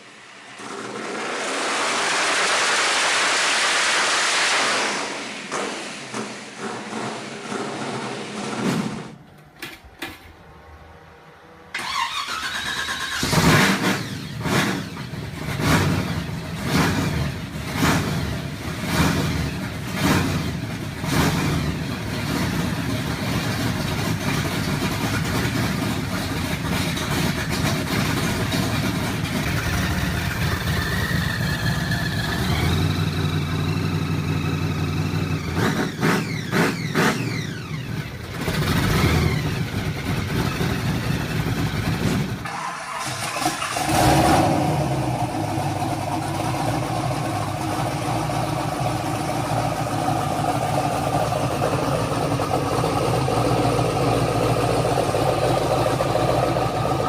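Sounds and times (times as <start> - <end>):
car engine revving: 0.0 - 9.4, 10.0 - 57.0
car engine idling: 5.3 - 57.0
car engine cranking: 11.7 - 16.0, 23.4 - 57.0.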